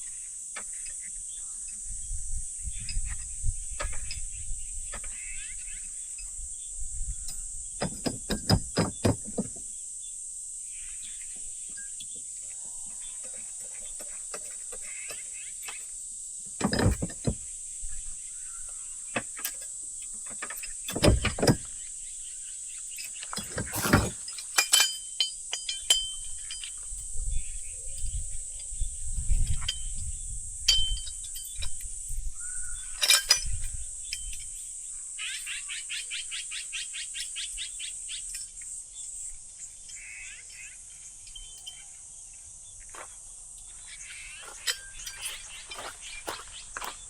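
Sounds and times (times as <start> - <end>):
insects chorus: 0.0 - 47.0
gear being handled: 23.0 - 26.8.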